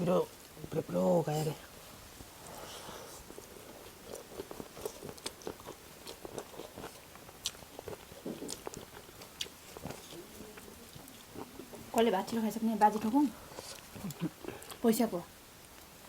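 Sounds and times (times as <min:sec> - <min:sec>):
person chewing food: 0:02.2 - 0:12.0, 0:13.4 - 0:14.8.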